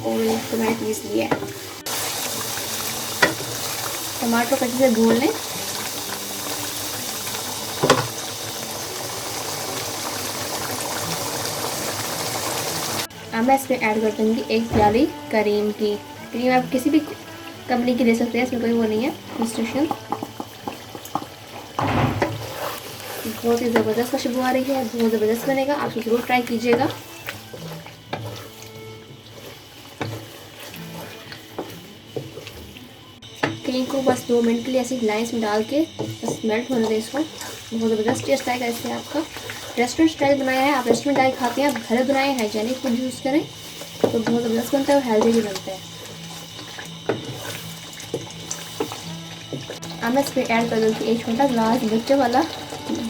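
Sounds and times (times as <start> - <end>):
food sizzling and bubbling: 0.0 - 53.0
spoon stirring: 14.8 - 32.6, 35.5 - 53.0.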